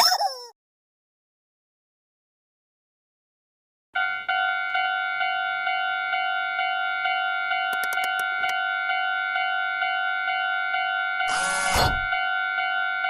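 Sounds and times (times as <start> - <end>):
railroad crossing warning bell: 4.0 - 13.0
sharp clicks: 7.7 - 8.6.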